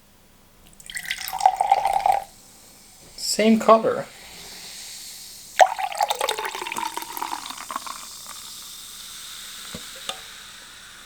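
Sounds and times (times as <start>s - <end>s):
drink fizzing: 0.6s - 11.0s
juice pouring into a glass: 0.7s - 2.4s, 5.5s - 10.8s.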